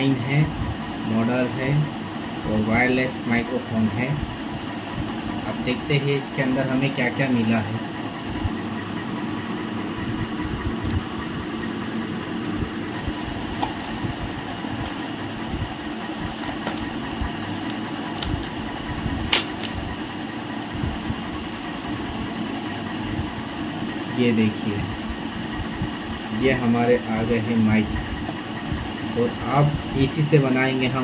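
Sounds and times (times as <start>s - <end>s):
mechanical hum: 0.0s - 31.0s
packaging clicks: 16.1s - 18.6s, 19.2s - 20.1s.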